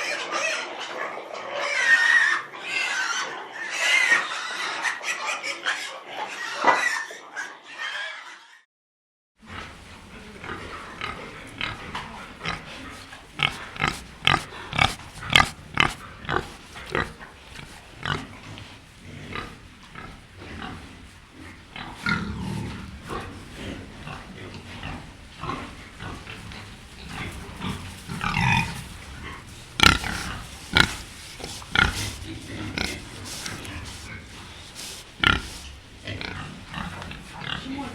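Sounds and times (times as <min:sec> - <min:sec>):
pig grunting: 0:09.4 - 0:37.9.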